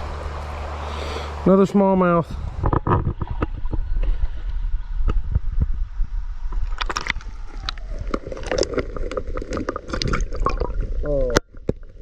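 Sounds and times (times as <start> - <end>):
wind buffeting microphone: 2.0 - 11.3
sharp crackles: 6.5 - 11.4.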